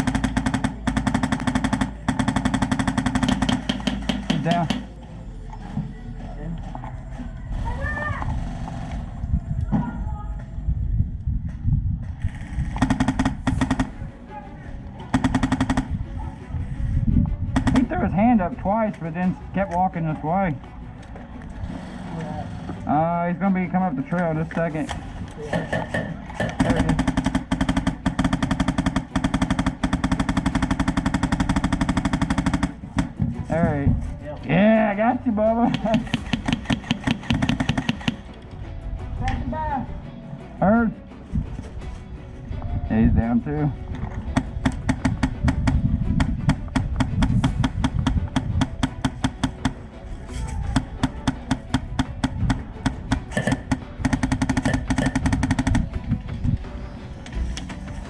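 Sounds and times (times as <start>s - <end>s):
airsoft rifle full-auto fire: 0.0s - 4.8s, 25.9s - 33.1s, 35.8s - 38.2s, 53.4s - 55.8s.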